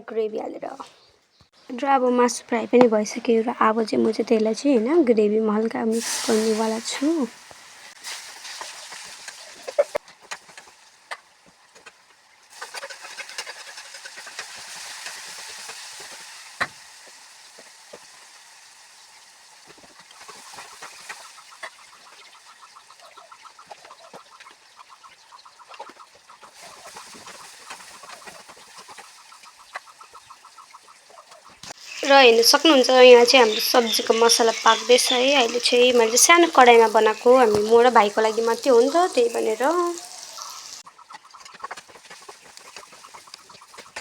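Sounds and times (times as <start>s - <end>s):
meat sizzling in a pan: 5.9s - 23.1s, 30.4s - 40.8s.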